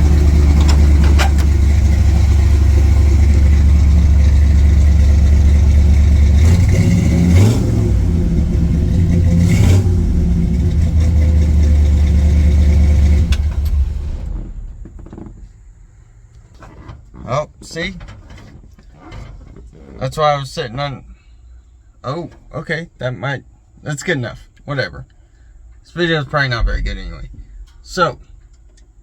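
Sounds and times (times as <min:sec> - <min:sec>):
truck engine idling and revving: 0:00.0 - 0:17.2, 0:25.5 - 0:29.0.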